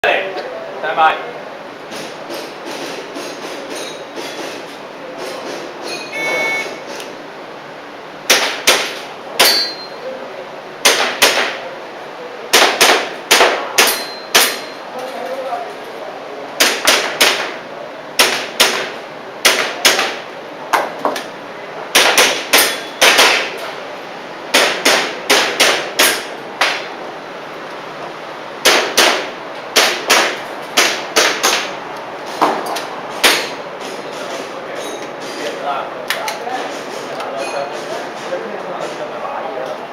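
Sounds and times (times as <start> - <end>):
electronic timer beep: 6.0 - 6.8
metallic ring of target hits: 9.4 - 10.0, 13.8 - 14.8
airsoft pistol shots: 10.8 - 11.6, 12.5 - 14.7, 18.2 - 20.2, 21.9 - 23.6, 24.5 - 26.9, 28.6 - 31.7.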